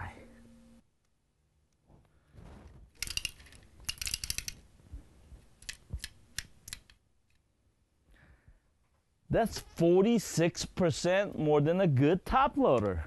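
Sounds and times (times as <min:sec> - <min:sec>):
hard objects clicking and clattering: 0:02.9 - 0:04.6.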